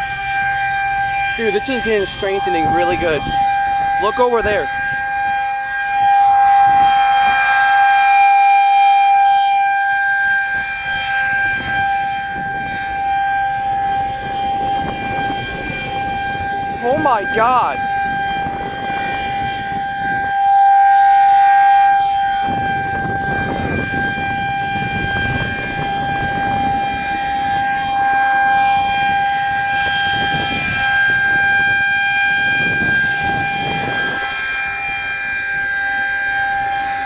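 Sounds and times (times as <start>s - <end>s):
outdoor warning siren steady tone: 0.0s - 37.0s.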